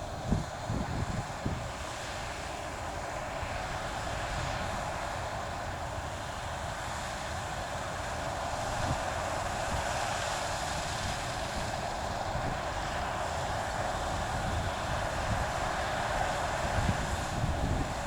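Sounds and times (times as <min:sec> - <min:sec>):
wind on microphone: 0:16.5 - 0:18.0.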